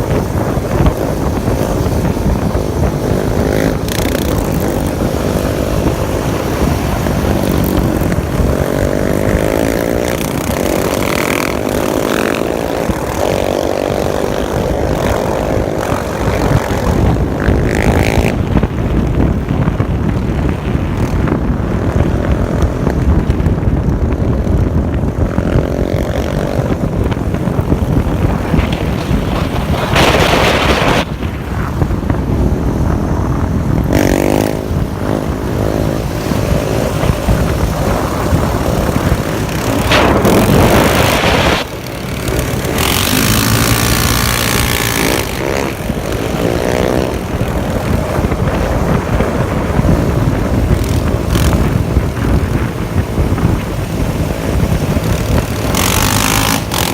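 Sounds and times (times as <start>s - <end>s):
quad engines revving: 0.0s - 18.6s, 32.4s - 56.9s
wind rumble on microphone: 0.0s - 56.9s.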